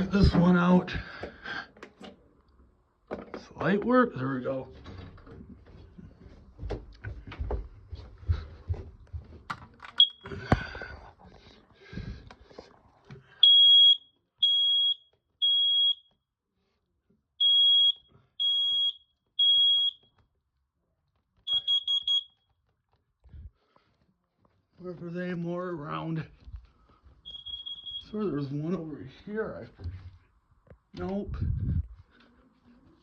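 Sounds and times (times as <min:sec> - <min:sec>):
smoke alarm beeping: 0:09.9 - 0:10.3, 0:13.4 - 0:16.2, 0:17.4 - 0:20.2, 0:21.5 - 0:22.5, 0:27.2 - 0:28.3.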